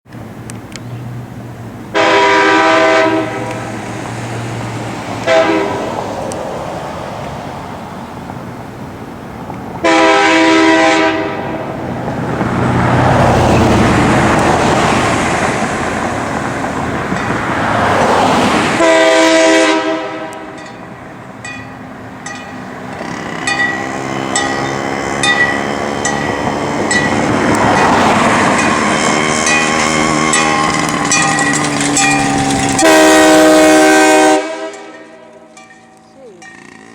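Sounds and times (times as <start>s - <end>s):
train horn blasts: 1.9s - 3.7s, 5.2s - 6.0s, 9.8s - 11.8s, 18.7s - 20.8s, 23.0s - 35.6s.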